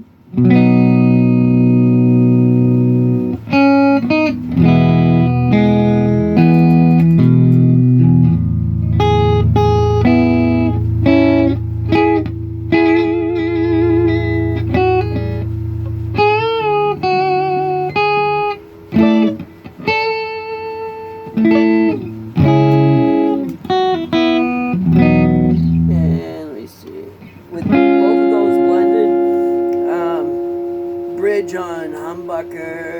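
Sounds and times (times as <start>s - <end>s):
clean electric guitar playing: 0.0s - 32.9s
low ringing guitar note: 27.2s - 32.9s.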